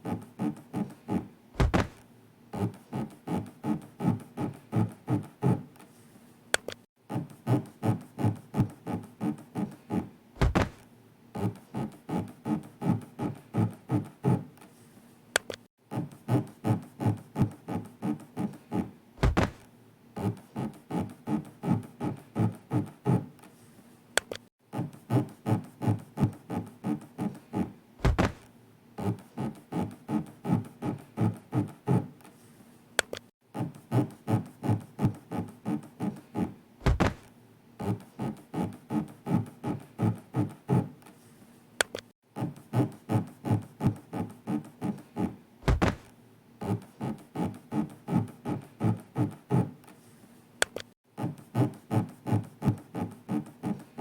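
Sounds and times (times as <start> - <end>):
low thunk: 1.6 - 2.0, 10.4 - 10.8, 19.2 - 19.6, 28.0 - 28.5, 36.8 - 37.3, 45.6 - 46.1.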